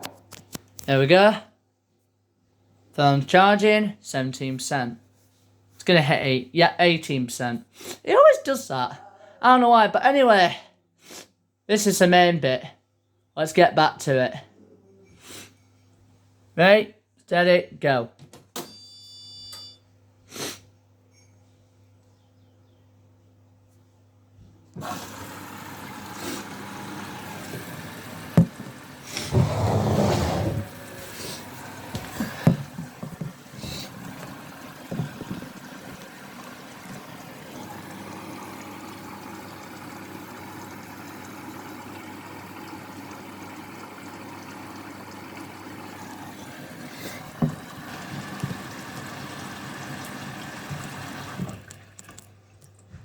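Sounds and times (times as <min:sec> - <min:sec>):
water rushing into washing machine: 0:24.8 - 0:52.8.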